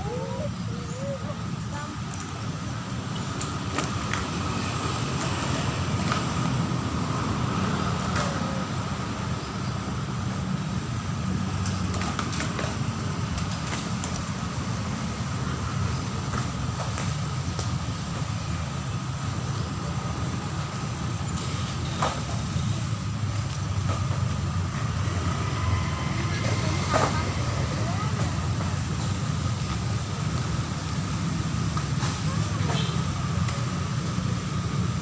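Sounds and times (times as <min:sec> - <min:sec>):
road traffic rumble: 0:00.0 - 0:35.0.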